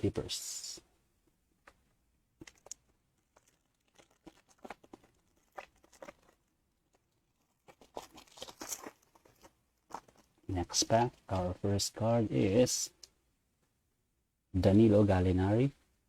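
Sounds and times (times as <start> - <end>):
foil wrapper tearing and crinkling: 2.4 - 11.1.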